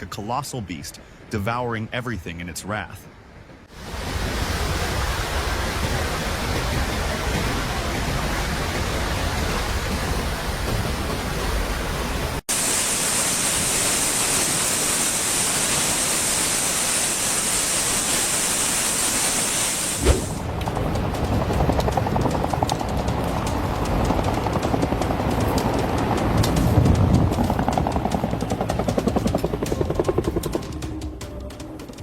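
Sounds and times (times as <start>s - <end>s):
floodwater roaring: 3.4s - 30.8s
rushing noise with high hiss: 3.6s - 20.5s.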